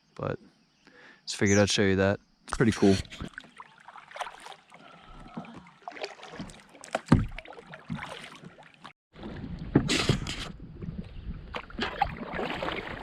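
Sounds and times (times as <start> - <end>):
paddle splashing in water: 2.8 - 13.0
knocks against canoe hull: 6.4 - 8.2.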